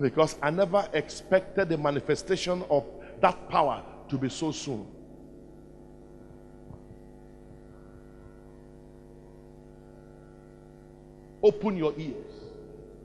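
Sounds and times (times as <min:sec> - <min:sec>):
electrical mains hum: 0:00.0 - 0:13.0.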